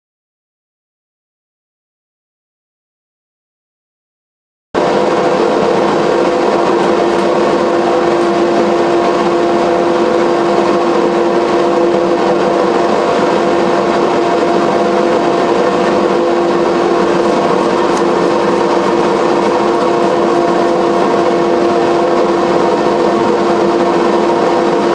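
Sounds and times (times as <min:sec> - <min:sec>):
angle grinder grinding glass: 0:06.8 - 0:08.4, 0:17.0 - 0:21.3.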